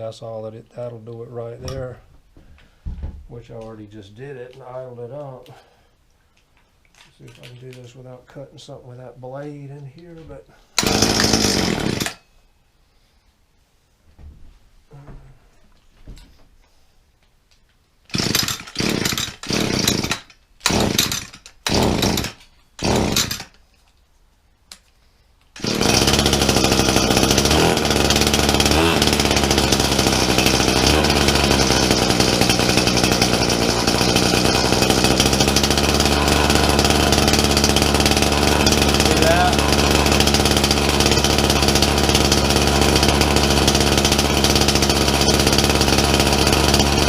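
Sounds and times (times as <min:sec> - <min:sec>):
brush cutter engine idling: 0:10.8 - 0:12.2, 0:18.1 - 0:23.6, 0:25.5 - 0:47.0
recoil starter cord pulls: 0:10.8 - 0:12.2, 0:18.1 - 0:23.9, 0:24.7 - 0:47.0.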